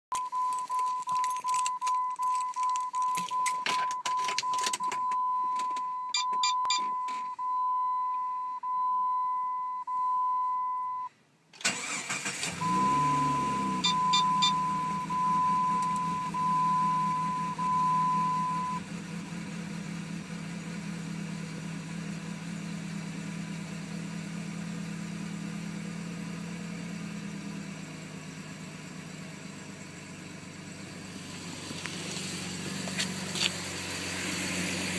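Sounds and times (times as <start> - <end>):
clicks: 0.1 - 7.4
dashboard chime beeping: 0.1 - 11.1, 12.6 - 18.8
engine cranking and idling: 11.6 - 34.9.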